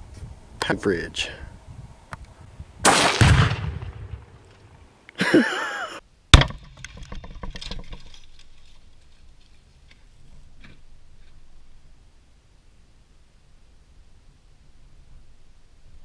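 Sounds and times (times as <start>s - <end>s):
loud rifle shots: 2.8s - 4.3s.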